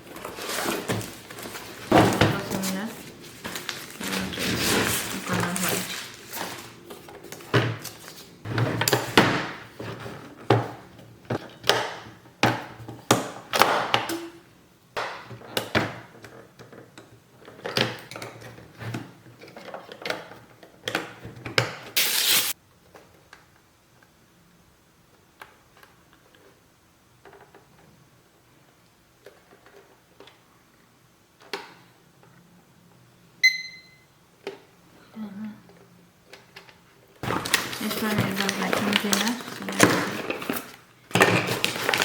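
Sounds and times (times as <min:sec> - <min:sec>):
objects knocking and rustling: 0:00.0 - 0:14.1, 0:36.4 - 0:42.0
brief loud hiss: 0:22.0 - 0:22.5.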